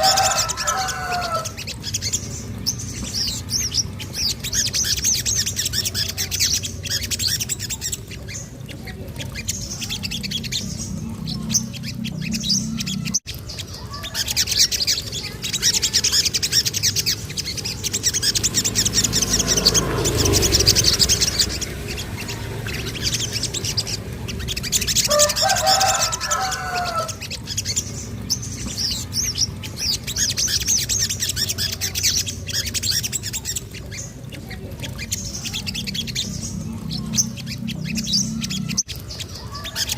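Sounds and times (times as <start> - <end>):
bird chirping and trilling: 0.0 - 39.9
low hum: 34.1 - 39.0.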